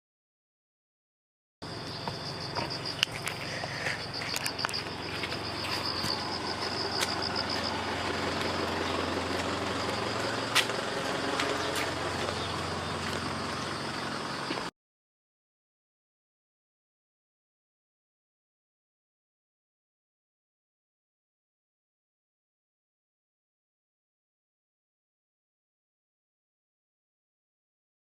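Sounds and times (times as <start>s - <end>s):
insects trilling: 1.6s - 14.7s
vehicle engine running: 1.6s - 14.7s.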